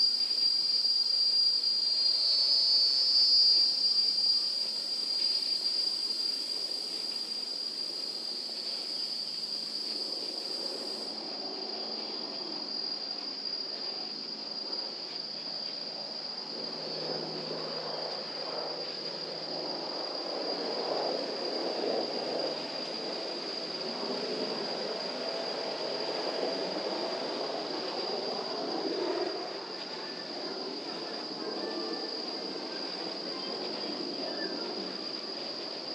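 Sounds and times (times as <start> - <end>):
insects buzzing: 0.0 - 22.6.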